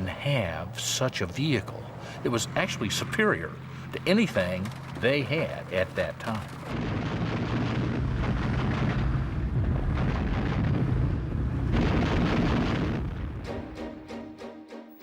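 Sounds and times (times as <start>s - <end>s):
explosions rumbling: 6.7s - 13.6s.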